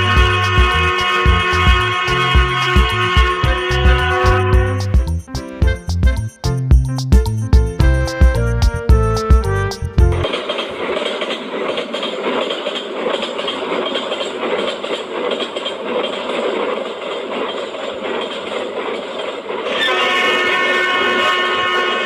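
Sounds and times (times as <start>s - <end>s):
train horn chord: 0.0s - 5.0s, 7.9s - 10.3s, 19.7s - 22.0s
train rattling: 0.0s - 22.0s.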